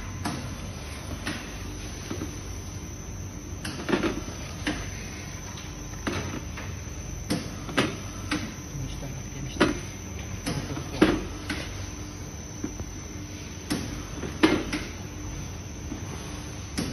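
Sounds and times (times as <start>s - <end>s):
machine motor hum: 0.0s - 16.9s.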